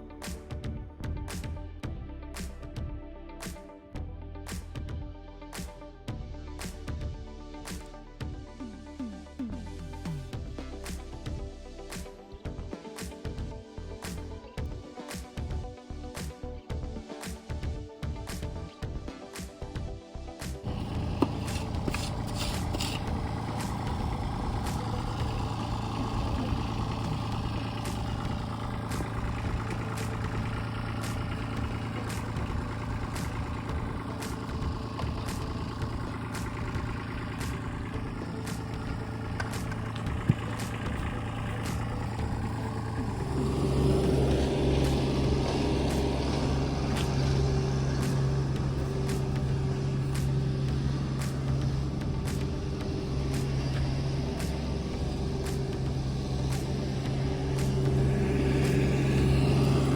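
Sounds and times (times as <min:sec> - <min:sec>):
engine running: 0:00.0 - 0:59.9.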